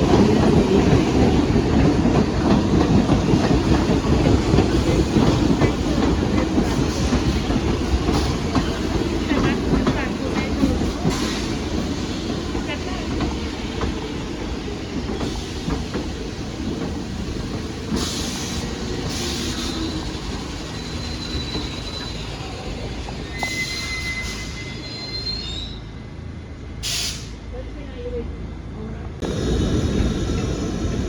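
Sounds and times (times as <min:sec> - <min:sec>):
subway train rumbling: 0:00.0 - 0:31.0
train wheels squealing: 0:17.9 - 0:26.2.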